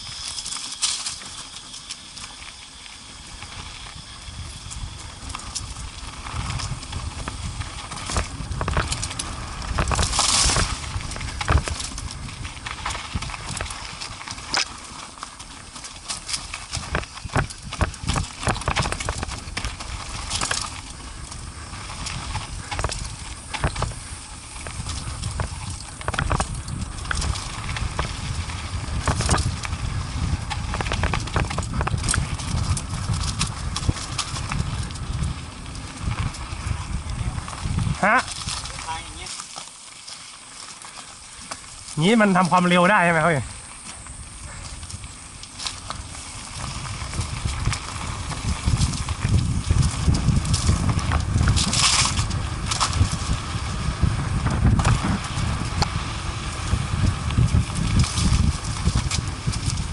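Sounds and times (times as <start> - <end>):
atv knocking and rattling: 46.8 - 59.9.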